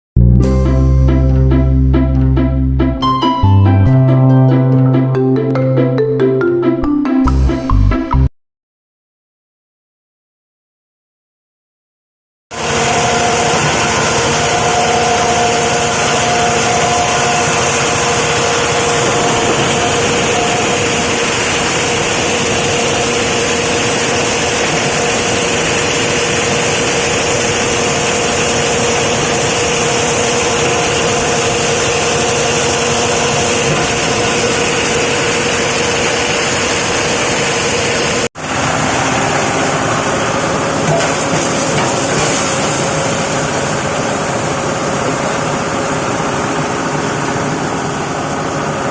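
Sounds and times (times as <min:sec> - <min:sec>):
plastic crusher machine running: 0:12.5 - 0:48.9.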